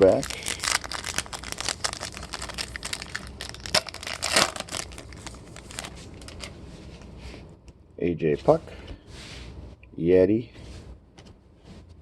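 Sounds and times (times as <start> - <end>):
wrapper crinkling and tearing: 0.0 - 6.5.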